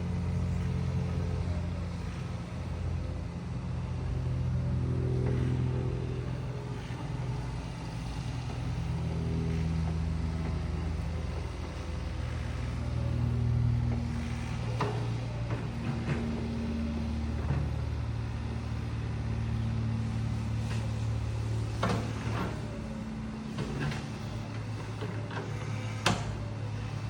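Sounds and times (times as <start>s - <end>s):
diesel engine of heavy machinery: 0.0s - 27.0s.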